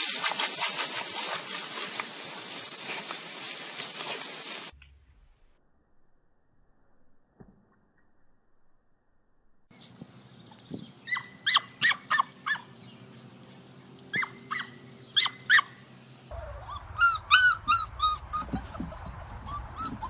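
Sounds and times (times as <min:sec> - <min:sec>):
dog whining and yipping: 0:11.0 - 0:12.6, 0:14.1 - 0:20.0
high yips and whimpers: 0:11.0 - 0:12.7, 0:14.1 - 0:20.0.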